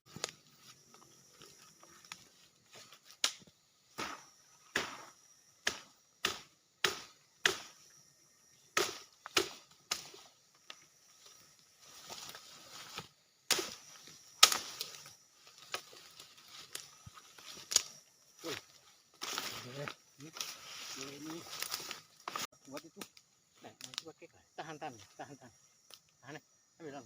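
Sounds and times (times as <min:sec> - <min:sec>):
wood chopping strikes: 0:03.1 - 0:07.8, 0:08.7 - 0:10.2, 0:12.9 - 0:15.0.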